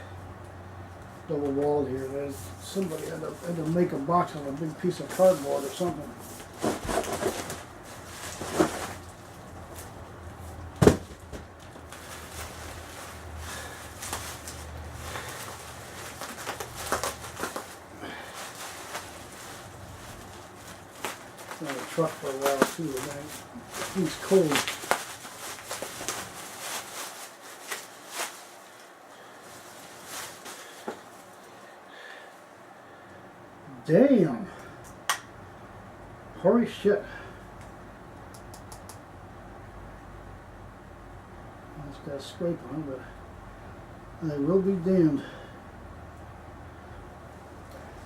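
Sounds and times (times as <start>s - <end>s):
cardboard box rustling and scraping: 6.3s - 9.1s.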